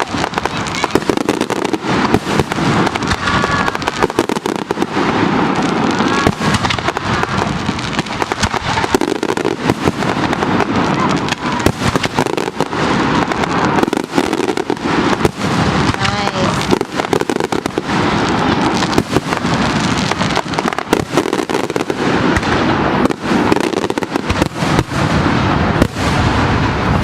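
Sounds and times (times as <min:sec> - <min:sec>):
voices: 0:00.0 - 0:01.6, 0:10.5 - 0:11.8, 0:15.8 - 0:16.8
fireworks bangs and crackle: 0:00.0 - 0:27.0.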